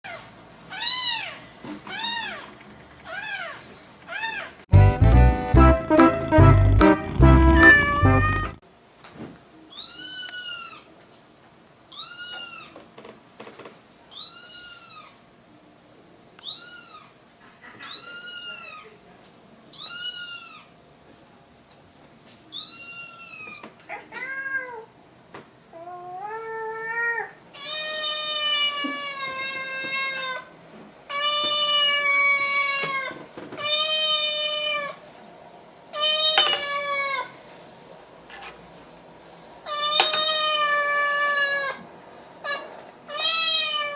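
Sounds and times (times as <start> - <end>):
kitten meowing: 6.3 - 8.6.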